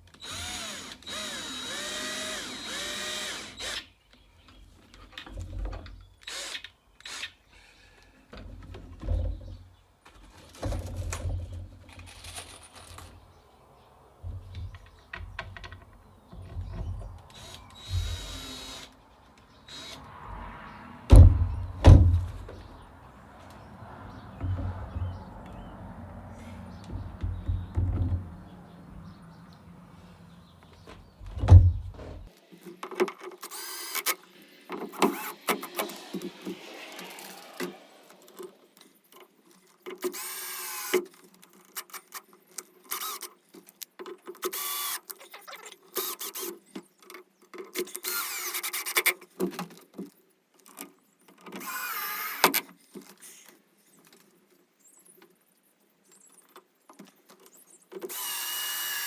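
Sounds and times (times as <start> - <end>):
cordless drill motor whine: 0.2 - 3.9, 6.2 - 7.2, 17.3 - 18.9, 33.5 - 34.1, 35.1 - 36.1, 51.6 - 52.4, 58.1 - 59.0.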